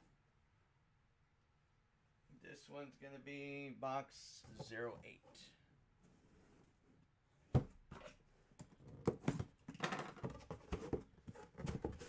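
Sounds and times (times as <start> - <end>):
clicks and rustling of box: 7.9 - 12.0.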